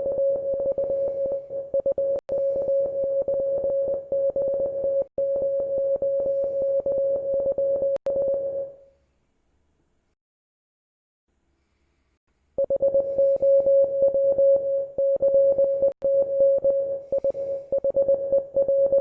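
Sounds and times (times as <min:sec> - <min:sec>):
morse code tone: 0:00.0 - 0:08.8, 0:12.6 - 0:19.0.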